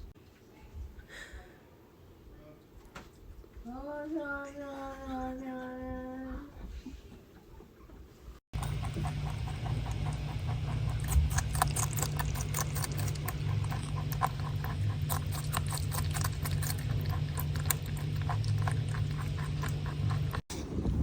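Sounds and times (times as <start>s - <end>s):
steady low hum: 3.3s - 21.0s
rabbit munching food: 8.6s - 21.0s.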